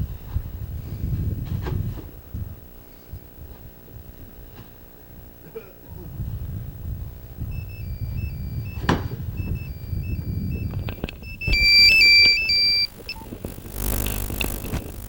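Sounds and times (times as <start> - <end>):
electronic beeping melody: 7.6 - 15.0.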